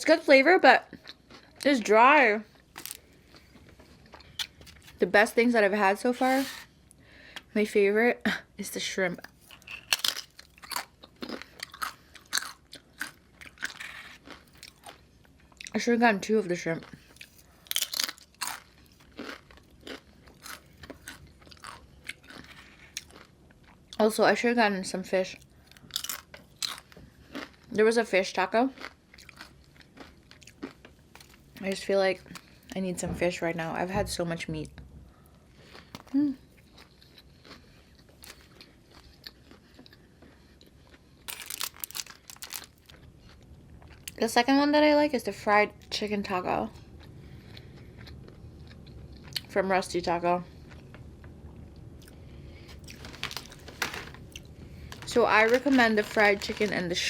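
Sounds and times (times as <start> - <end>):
person chewing food: 0.9 - 1.7, 2.4 - 5.0, 9.2 - 15.7, 16.8 - 24.0, 25.4 - 27.7, 28.8 - 31.6, 35.1 - 44.2, 46.8 - 49.5, 50.5 - 56.8.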